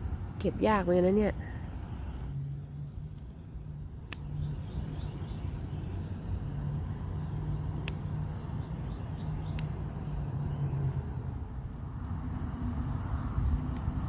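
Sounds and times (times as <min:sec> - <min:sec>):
low mechanical hum: 0:00.0 - 0:14.0
sharp clicks: 0:03.1 - 0:04.5, 0:07.6 - 0:08.3, 0:09.2 - 0:10.5.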